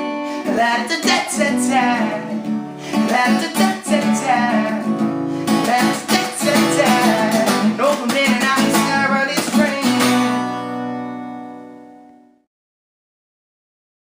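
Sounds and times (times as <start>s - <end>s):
wordless singing: 0.0s - 10.4s
acoustic guitar strumming: 0.0s - 12.4s.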